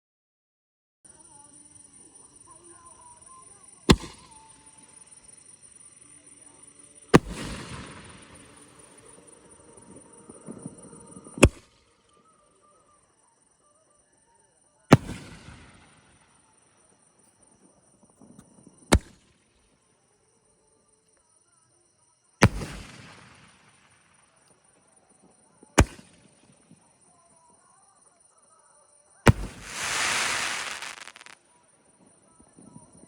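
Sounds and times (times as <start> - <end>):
firework booms: 7.2 - 8.4, 29.3 - 31.4
firework hiss: 29.3 - 31.4.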